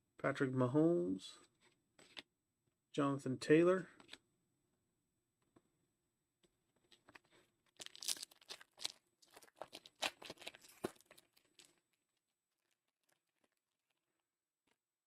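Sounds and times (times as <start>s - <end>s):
foil wrapper tearing and crinkling: 7.8s - 11.8s.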